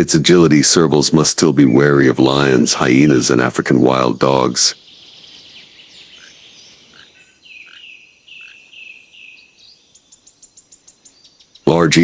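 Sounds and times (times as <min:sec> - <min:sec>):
bird chirping: 0:00.0 - 0:12.0
faint high insect hiss: 0:04.0 - 0:11.7.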